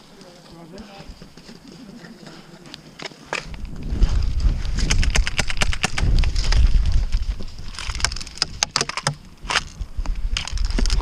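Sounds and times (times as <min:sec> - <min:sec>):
low rumble: 0:03.5 - 0:08.2.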